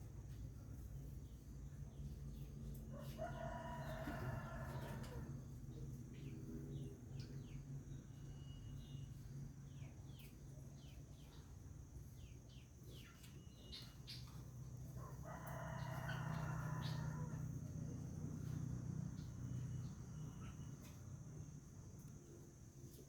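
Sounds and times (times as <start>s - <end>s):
rooster crowing: 2.9s - 5.3s, 15.0s - 17.5s.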